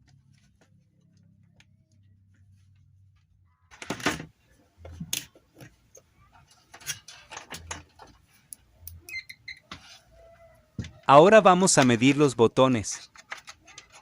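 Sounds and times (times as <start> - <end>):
tools clicking and knocking: 4.8 - 9.7, 13.0 - 14.0.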